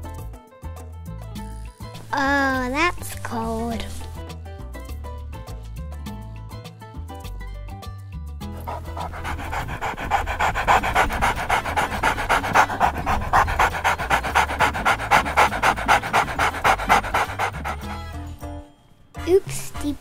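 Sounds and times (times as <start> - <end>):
background music: 0.0 - 20.0
puppy panting: 8.6 - 18.1.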